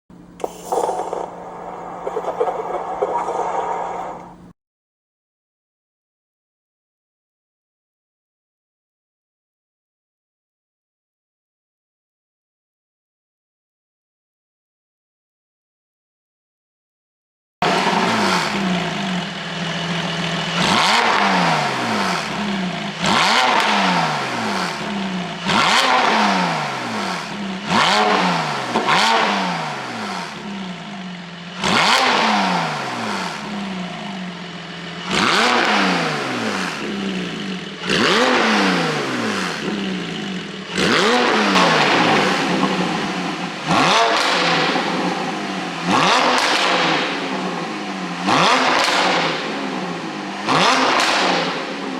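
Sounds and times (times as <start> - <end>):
car engine revving: 17.6 - 51.9.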